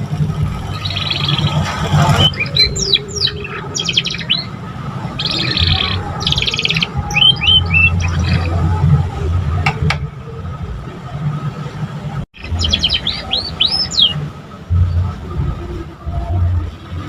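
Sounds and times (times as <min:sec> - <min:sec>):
steady low hum: 0:00.0 - 0:17.0
canary singing trills and chirps: 0:00.6 - 0:08.9, 0:12.4 - 0:14.3.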